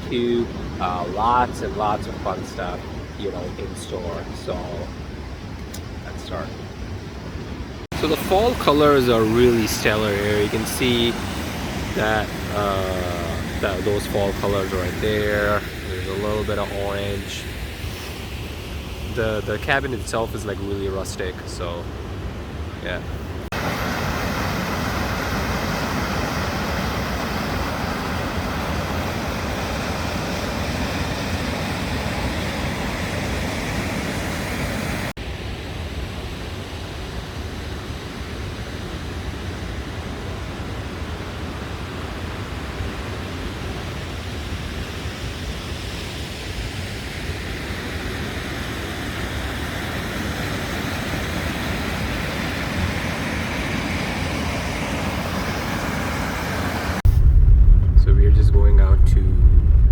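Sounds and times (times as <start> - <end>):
waterfall rushing: 7.9 - 17.4, 23.5 - 35.1.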